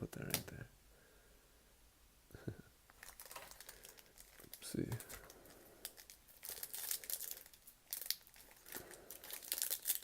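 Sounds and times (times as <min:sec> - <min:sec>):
card pack wrapper crinkling and tearing: 0:02.9 - 0:10.0.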